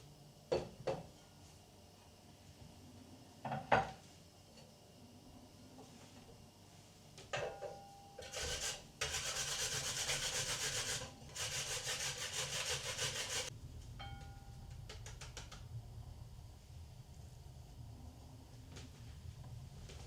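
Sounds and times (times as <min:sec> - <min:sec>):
pumpkin grating on a grater: 0:08.3 - 0:13.5.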